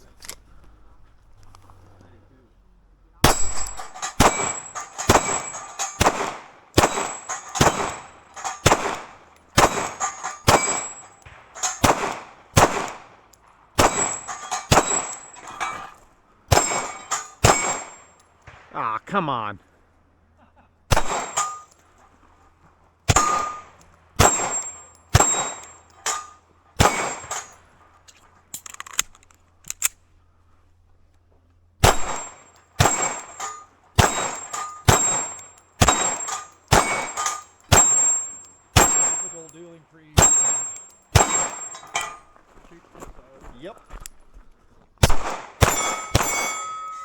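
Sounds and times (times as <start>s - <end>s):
steel target ringing: 3.2s - 6.1s, 9.6s - 12.0s, 13.8s - 18.1s, 21.0s - 21.8s, 23.1s - 27.6s, 31.8s - 39.6s, 40.2s - 42.3s, 45.6s - 47.0s
gunshots: 3.2s - 13.2s, 13.8s - 15.3s, 16.5s - 19.4s, 20.9s - 21.6s, 23.1s - 25.6s, 26.8s - 27.5s, 31.8s - 33.4s, 34.0s - 38.1s, 40.2s - 41.8s, 45.0s - 46.8s.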